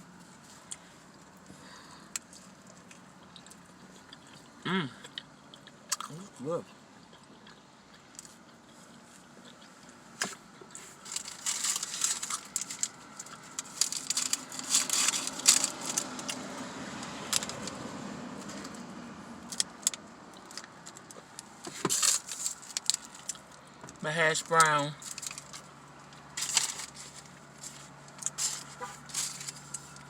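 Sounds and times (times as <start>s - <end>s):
paper bag crinkling and rustling: 10.8s - 16.4s, 21.7s - 23.3s, 25.0s - 25.7s, 26.4s - 30.0s.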